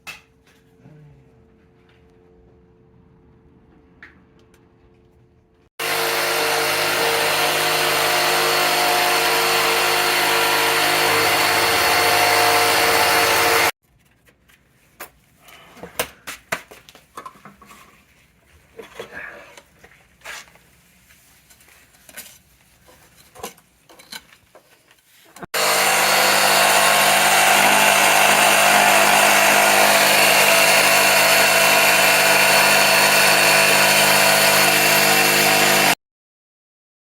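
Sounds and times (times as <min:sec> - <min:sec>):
power tool running: 0:05.8 - 0:13.8, 0:25.5 - 0:36.0.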